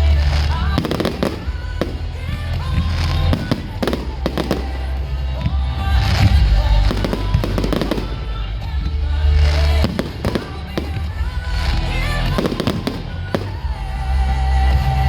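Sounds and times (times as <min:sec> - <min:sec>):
fireworks bangs and crackles: 0:00.0 - 0:14.2
loud music with heavy bass: 0:00.0 - 0:15.0.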